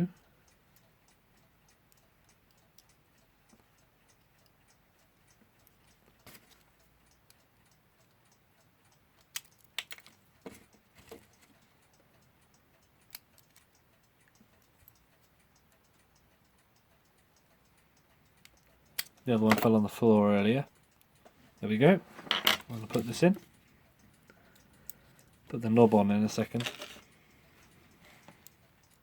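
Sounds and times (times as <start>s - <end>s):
clock ticking: 0.0s - 29.0s
clicks of small metal clock parts: 9.2s - 11.6s, 18.4s - 20.0s, 22.3s - 27.2s.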